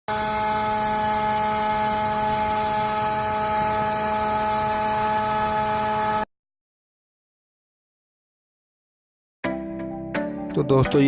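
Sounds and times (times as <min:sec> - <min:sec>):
small fan whirring: 0:00.1 - 0:06.3.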